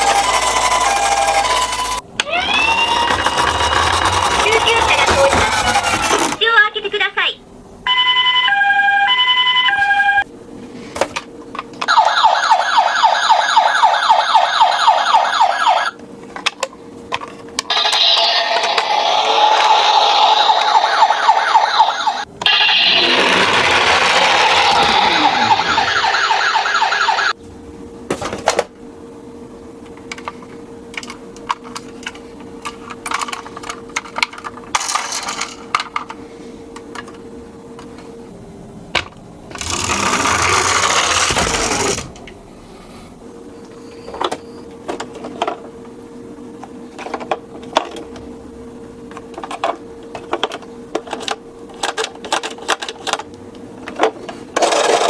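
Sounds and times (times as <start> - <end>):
toy siren warbling: 0.0 - 6.4, 11.9 - 16.0, 17.7 - 27.4.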